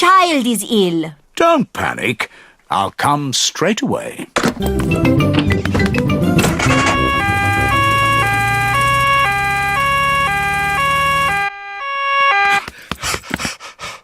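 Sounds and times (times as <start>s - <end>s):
low engine hum: 5.9s - 11.4s
two-tone cartoon siren: 6.2s - 12.7s
short noisy rush: 6.3s - 10.7s.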